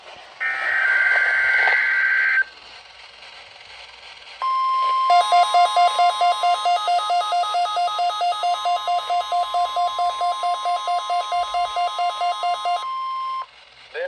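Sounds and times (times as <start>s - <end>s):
steady warning alarm tone: 5.1s - 12.8s
weather radio receiver beeping: 5.1s - 12.8s.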